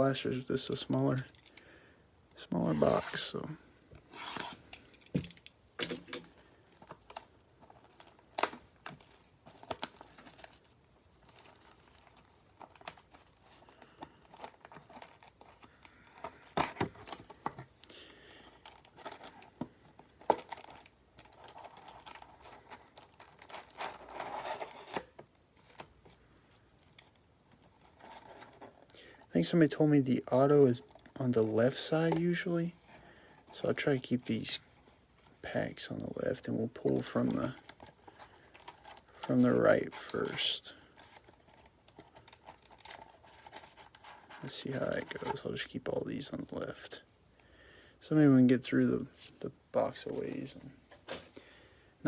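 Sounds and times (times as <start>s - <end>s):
plastic wrapping crinkling: 6.3s - 29.0s, 33.5s - 46.8s.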